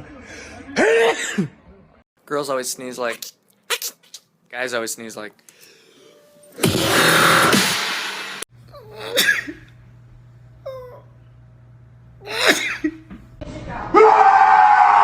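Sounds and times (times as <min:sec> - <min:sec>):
sharp sneezes: 0:08.9 - 0:09.6, 0:12.2 - 0:12.9.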